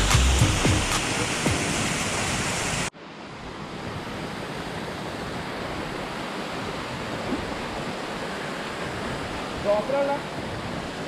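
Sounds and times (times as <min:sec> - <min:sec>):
waterfall rushing: 0:00.0 - 0:02.9.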